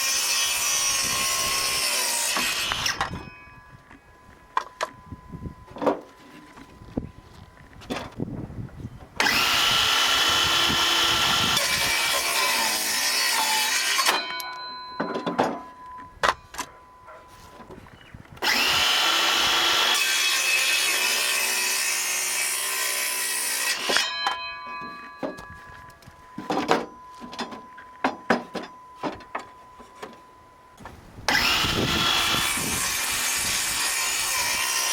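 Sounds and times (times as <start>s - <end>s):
circular saw cutting wood: 0.0s - 3.0s, 9.2s - 14.2s, 18.4s - 24.1s, 31.3s - 34.9s.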